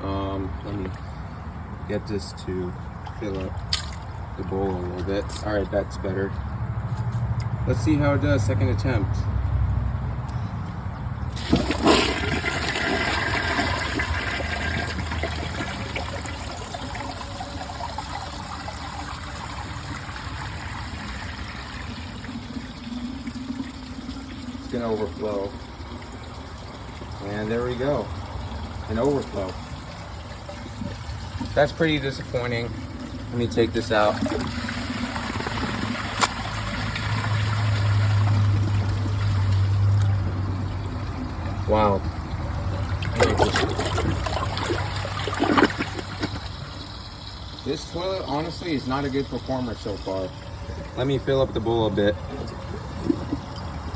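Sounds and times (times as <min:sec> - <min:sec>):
low steady hum: 0:00.0 - 0:53.9
toilet bowl filling: 0:11.3 - 0:53.9
toilet flushing: 0:11.3 - 0:53.9.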